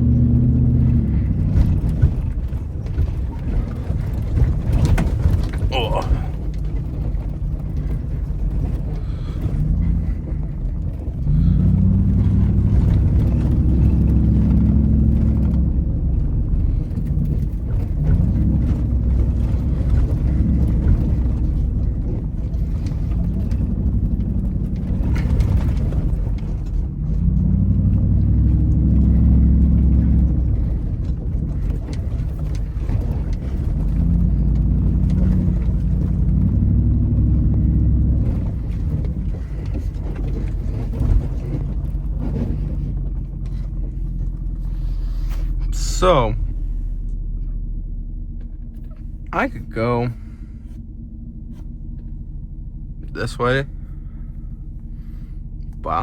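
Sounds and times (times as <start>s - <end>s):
truck engine revving: 0.0s - 47.8s
truck driving on dirt road: 0.0s - 56.0s.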